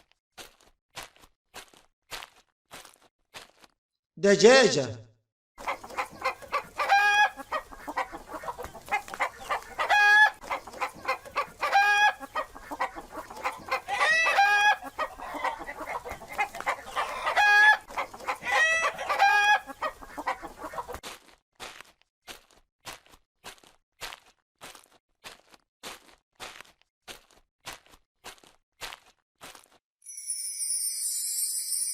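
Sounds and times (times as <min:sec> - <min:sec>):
hens clucking: 0:05.6 - 0:21.0
high-pitched hen calls: 0:05.6 - 0:21.0.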